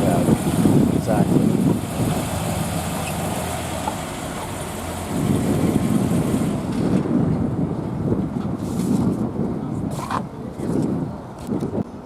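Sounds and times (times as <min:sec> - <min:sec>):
car engine idling: 0:00.0 - 0:07.0.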